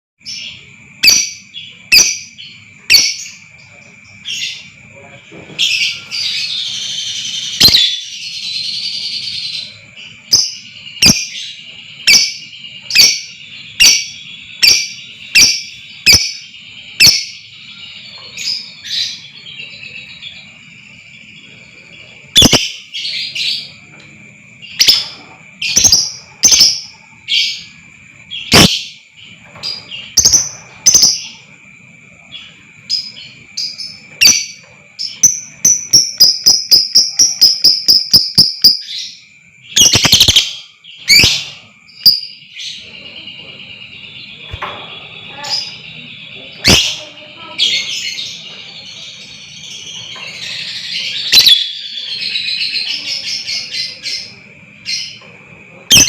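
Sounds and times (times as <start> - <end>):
lovebird sharp chirps: 0.2 - 3.5, 5.7 - 19.3, 22.3 - 23.8, 24.6 - 27.8, 28.4 - 31.6, 32.9 - 42.9, 44.0 - 47.1, 49.2 - 54.3
lovebird chattering trill: 0.3 - 3.5, 5.6 - 19.5, 22.2 - 23.8, 24.6 - 31.5, 32.3 - 43.2, 45.2 - 55.2.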